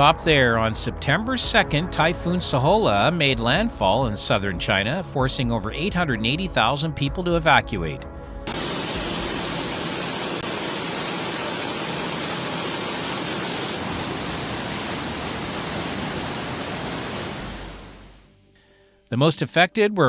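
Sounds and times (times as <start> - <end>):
rushing storm noise: 8.5 - 18.3.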